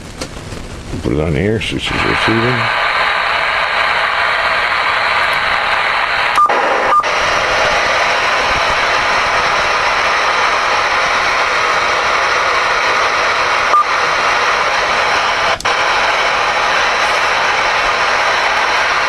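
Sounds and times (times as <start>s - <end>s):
radio static hiss: 0.9s - 19.0s
radio click: 1.9s - 19.0s
short beep: 6.4s - 7.1s.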